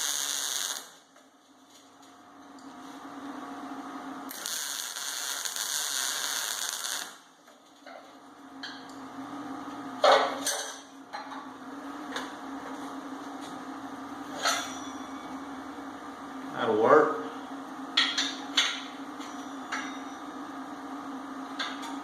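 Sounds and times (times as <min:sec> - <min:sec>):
welding arc hissing: 0:00.0 - 0:01.0, 0:04.3 - 0:07.3
steady low hum: 0:00.0 - 0:22.0.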